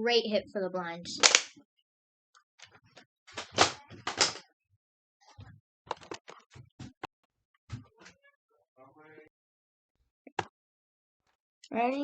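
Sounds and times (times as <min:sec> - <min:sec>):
toy blaster clicks: 0:01.2 - 0:01.5.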